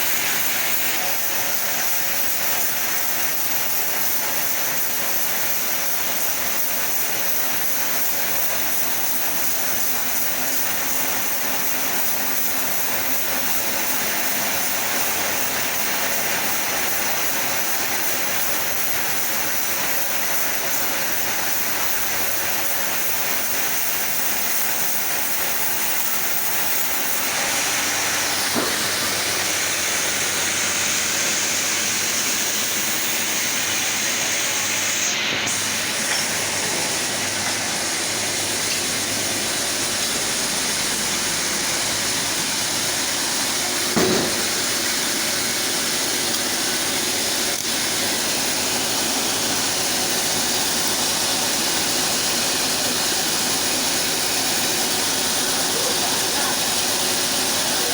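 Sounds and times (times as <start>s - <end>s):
chainsaw cutting log: 0.0s - 57.9s
knock: 28.6s - 28.9s, 44.0s - 44.6s.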